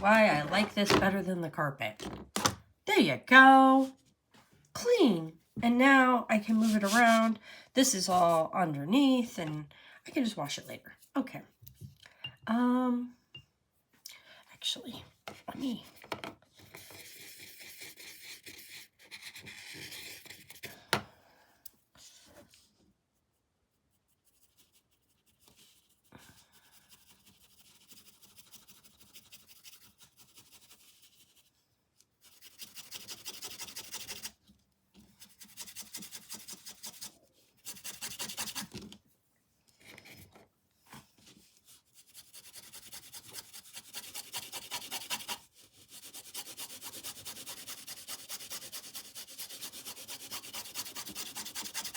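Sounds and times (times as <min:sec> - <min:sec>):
paintbrush scrubbing canvas: 0:00.0 - 0:01.0, 0:06.4 - 0:07.4, 0:16.7 - 0:20.7, 0:23.2 - 0:34.4, 0:35.1 - 0:38.8, 0:41.1 - 0:51.9.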